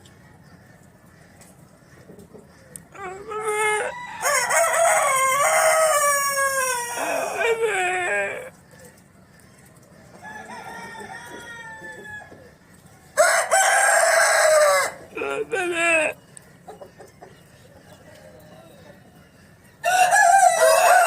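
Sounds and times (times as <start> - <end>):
roosters crowing: 2.9 - 8.8, 10.2 - 16.3, 17.0 - 21.0.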